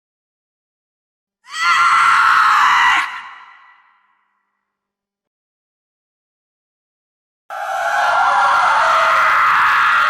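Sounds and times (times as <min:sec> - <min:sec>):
high-pitched scream: 0:07.5 - 0:10.0.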